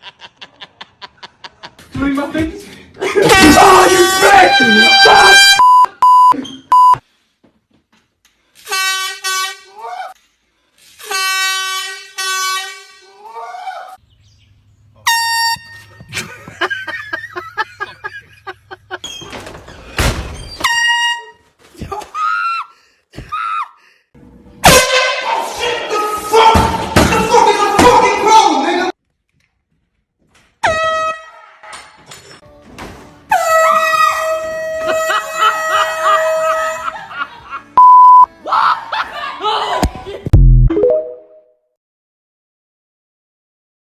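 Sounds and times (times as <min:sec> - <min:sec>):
person yelling: 0:03.1 - 0:05.6, 0:25.2 - 0:28.9
air horn blast: 0:03.5 - 0:05.6, 0:08.6 - 0:09.7, 0:11.0 - 0:13.1, 0:24.6 - 0:25.4, 0:30.6 - 0:31.4
short steady beep: 0:05.6 - 0:07.0, 0:37.8 - 0:38.3.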